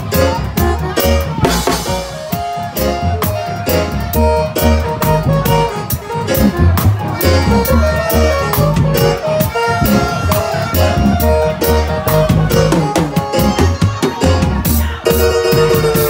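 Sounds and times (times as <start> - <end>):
band playing instrumental music: 0.0 - 16.0
low bass line: 0.0 - 16.0.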